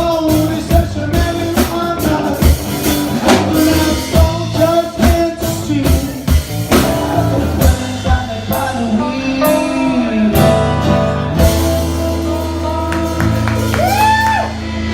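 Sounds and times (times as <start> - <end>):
person singing: 0.0 - 14.7
drum kit: 0.0 - 14.9
live reggae band playing: 0.0 - 14.9.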